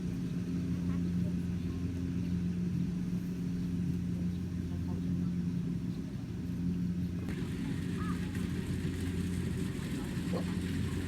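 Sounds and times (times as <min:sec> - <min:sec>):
engine humming steadily: 0:00.0 - 0:11.0.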